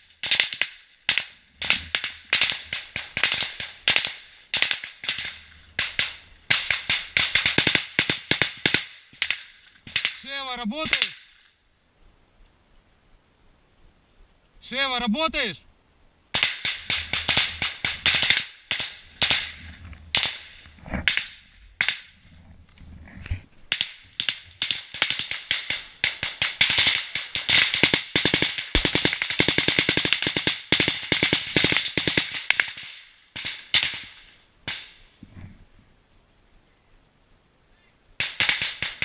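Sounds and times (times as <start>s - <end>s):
small-arms gunfire: 0.2s - 10.2s, 10.8s - 11.3s, 16.4s - 22.2s, 23.7s - 35.0s, 38.2s - 39.0s.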